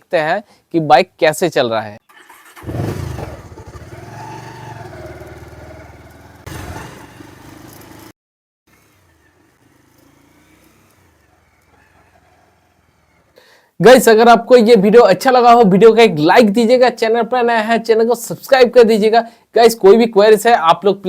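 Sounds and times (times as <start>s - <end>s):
motorcycle engine running: 2.6s - 8.1s, 8.7s - 12.0s.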